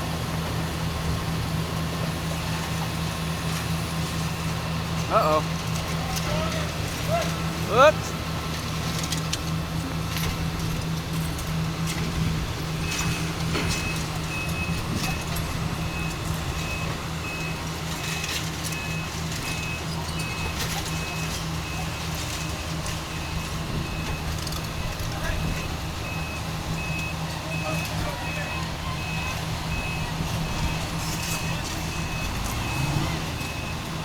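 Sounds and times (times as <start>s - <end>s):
diesel engine running: 0.0s - 34.0s
backup alarm beeping: 12.8s - 18.2s, 18.8s - 34.0s.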